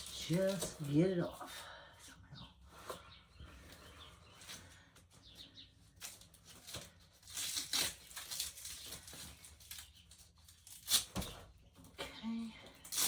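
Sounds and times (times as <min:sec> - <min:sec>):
bag tearing and crinkling: 0:06.0 - 0:11.3.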